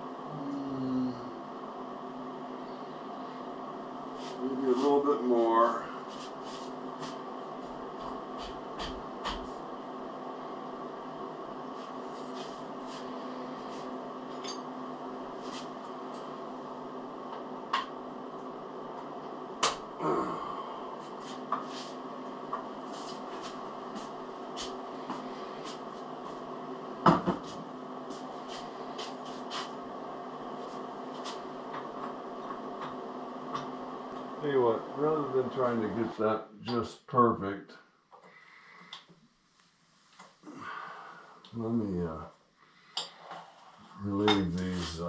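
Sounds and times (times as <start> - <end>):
steady hum: 0.0 - 45.0.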